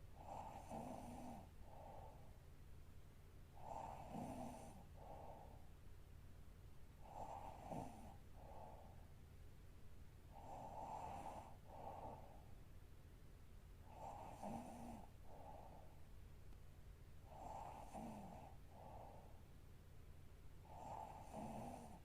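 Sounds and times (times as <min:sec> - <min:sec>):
woman snoring softly: 0:00.2 - 0:02.3, 0:03.5 - 0:05.7, 0:07.0 - 0:09.1, 0:10.3 - 0:12.5, 0:13.8 - 0:16.0, 0:17.2 - 0:19.4, 0:20.6 - 0:22.0.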